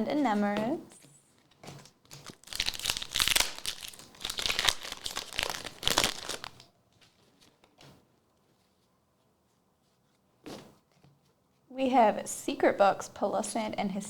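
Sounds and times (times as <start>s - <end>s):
foil wrapper crinkling and tearing: 1.8s - 6.7s.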